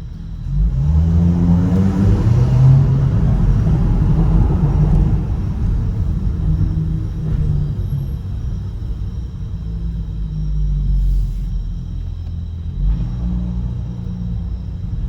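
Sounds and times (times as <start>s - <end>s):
car engine revving: 0.0s - 15.0s
exhaust crackling: 0.0s - 15.0s.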